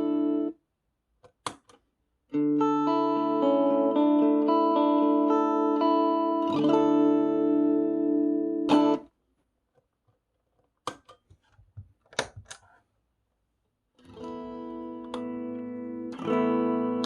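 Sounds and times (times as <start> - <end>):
guitar string and pick clicks: 10.8 - 11.2, 14.0 - 17.0
electric guitar chord strummed: 14.2 - 17.0.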